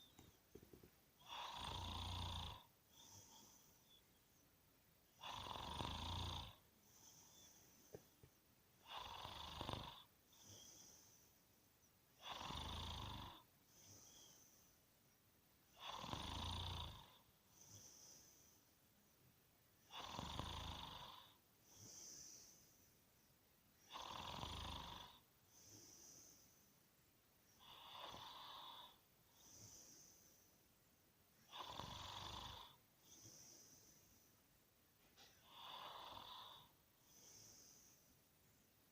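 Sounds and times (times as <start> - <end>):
person snoring: 1.2 - 4.0, 5.2 - 8.1, 8.8 - 11.3, 12.2 - 14.6, 15.8 - 18.6, 19.9 - 22.8, 23.8 - 26.6, 27.6 - 30.5, 31.5 - 34.3, 35.4 - 38.1
airy hissing breath: 21.1 - 23.0, 35.4 - 38.2.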